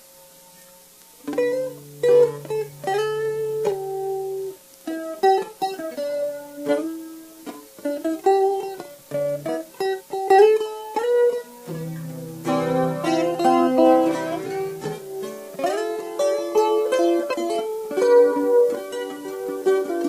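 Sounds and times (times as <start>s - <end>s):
plucked guitar melody: 0.6s - 20.0s.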